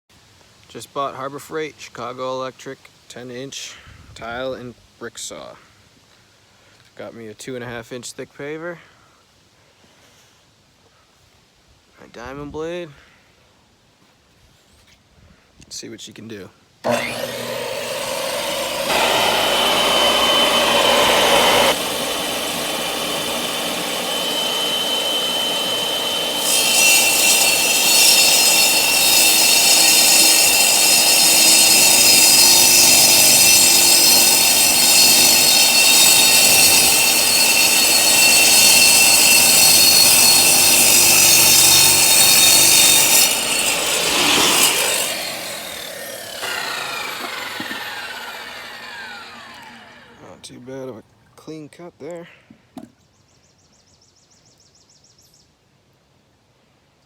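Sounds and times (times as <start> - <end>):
tile saw grinding through stone: 16.9 - 50.4.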